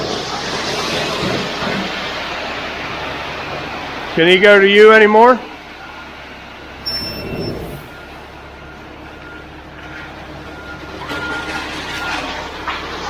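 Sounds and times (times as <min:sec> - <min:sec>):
diesel truck engine running: 0:00.0 - 0:13.0
short high beeps: 0:06.8 - 0:08.1
rush of noise: 0:06.9 - 0:08.1.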